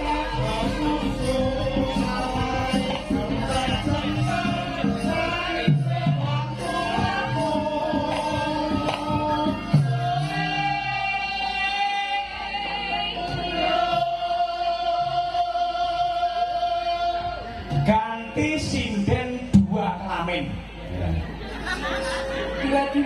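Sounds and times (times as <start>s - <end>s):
gamelan music: 0.0s - 15.7s, 20.8s - 23.0s.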